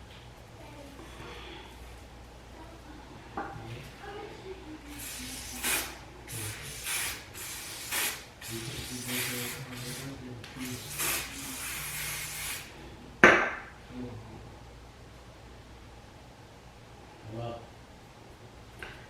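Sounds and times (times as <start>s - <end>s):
aerosol can spraying: 4.9s - 12.8s.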